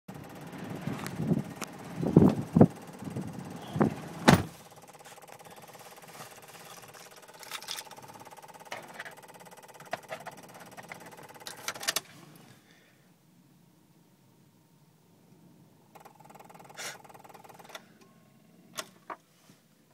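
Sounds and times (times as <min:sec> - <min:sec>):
electrical clicking and buzzing: 0:00.1 - 0:12.1, 0:15.9 - 0:17.9
thumps: 0:03.8 - 0:04.6.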